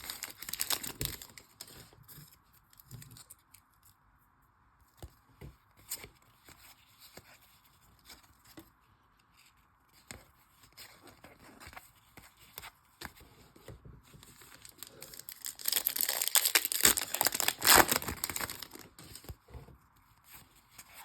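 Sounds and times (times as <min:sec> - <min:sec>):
foil wrapper crinkling: 0:00.0 - 0:01.7, 0:14.2 - 0:19.2.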